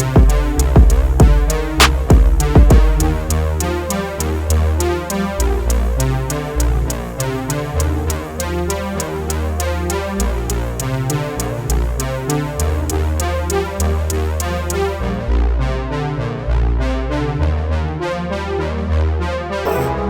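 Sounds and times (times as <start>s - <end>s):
electronic music with drum machine: 0.0s - 15.0s.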